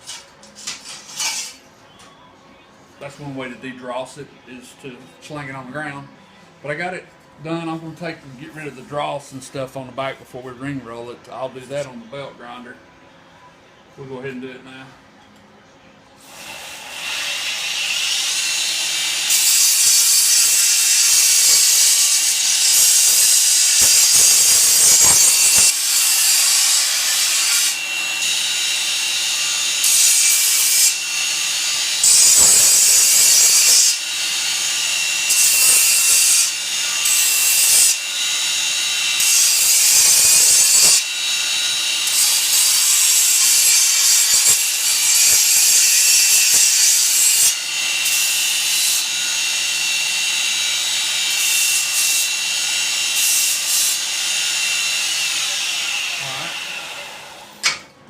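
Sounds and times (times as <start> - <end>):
belt grinder grinding steel: 0.8 - 1.6, 16.3 - 57.0.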